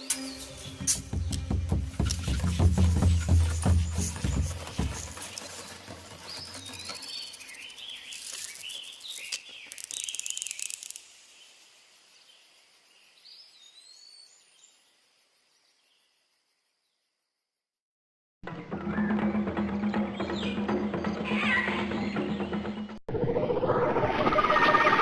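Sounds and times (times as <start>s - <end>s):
birds chirping and calling: 0.0s - 10.9s, 18.7s - 22.9s.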